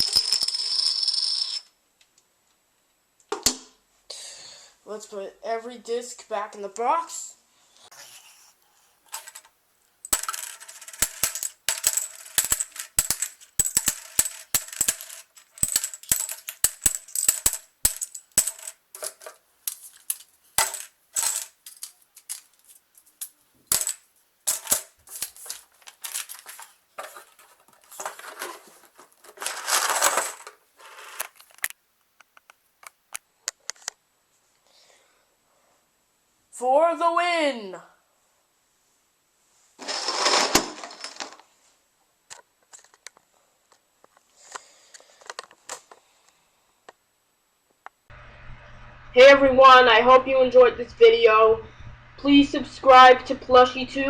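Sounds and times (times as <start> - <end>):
plastic discs clicking and clattering: 9.1 - 34.0, 44.5 - 46.0.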